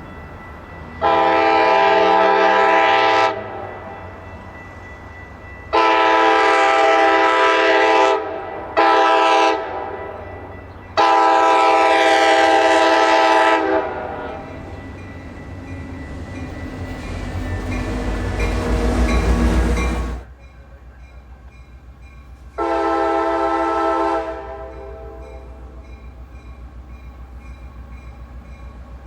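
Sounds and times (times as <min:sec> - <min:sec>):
low train rumble: 0:00.0 - 0:29.0
locomotive air horn blasts: 0:01.0 - 0:03.7, 0:05.7 - 0:10.2, 0:11.0 - 0:14.5, 0:22.6 - 0:25.6.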